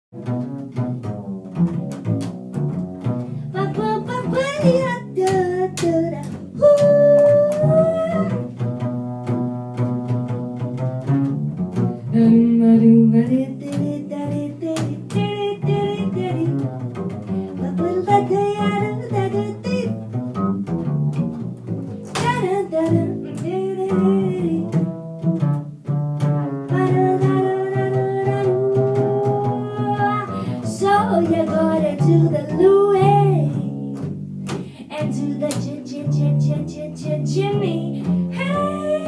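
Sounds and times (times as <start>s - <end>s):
double bass playing: 0.1s - 39.0s
voice-like melody: 5.2s - 8.5s.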